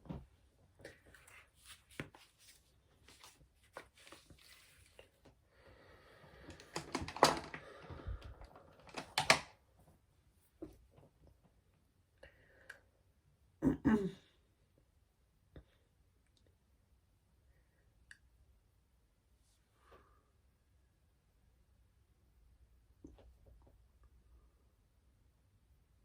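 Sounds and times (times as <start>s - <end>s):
makeup items clicking and rustling: 6.5s - 7.6s, 8.4s - 9.5s.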